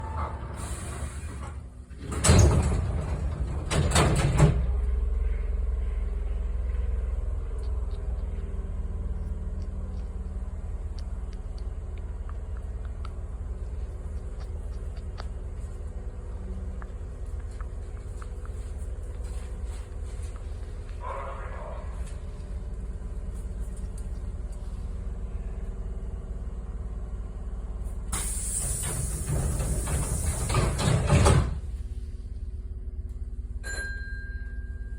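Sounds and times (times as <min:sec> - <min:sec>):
train doors sliding and knocking: 0:00.0 - 0:04.9, 0:28.1 - 0:31.8
train rumbling: 0:00.0 - 0:33.6.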